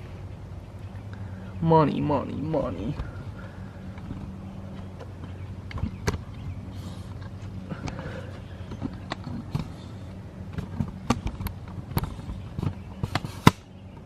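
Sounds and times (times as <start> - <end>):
low electrical hum: 0.0 - 14.0
equipment handling clicks and knocks: 8.6 - 9.8, 10.5 - 14.0.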